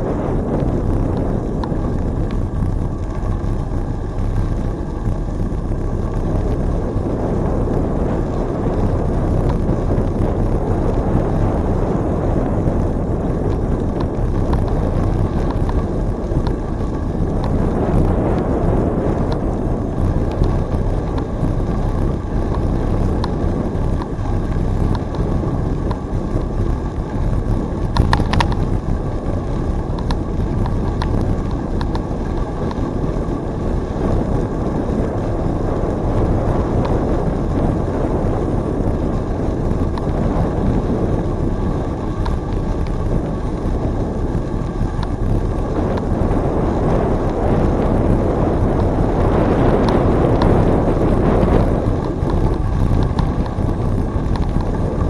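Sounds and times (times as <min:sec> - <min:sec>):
wind rushing over microphone: 0:00.0 - 0:55.0.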